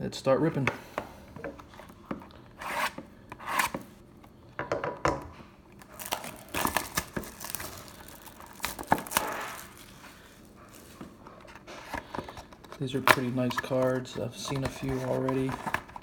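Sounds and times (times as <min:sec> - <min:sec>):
wrapping torn and crinkled: 0:05.8 - 0:12.0.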